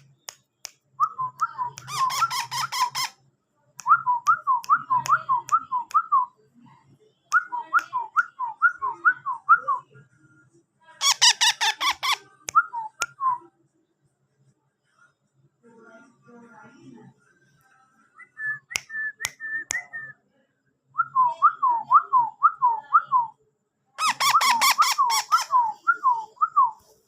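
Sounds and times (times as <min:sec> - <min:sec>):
parakeet chick chirping: 0:01.8 - 0:03.2, 0:24.0 - 0:25.6.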